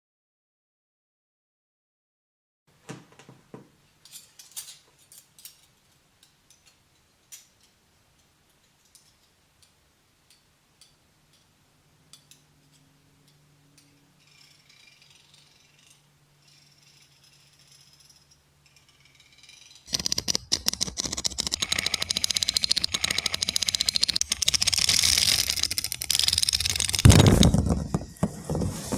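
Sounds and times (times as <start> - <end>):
small mechanical clicks and ticks: 13.8 - 27.2
rapid rattling of gears: 14.3 - 27.7.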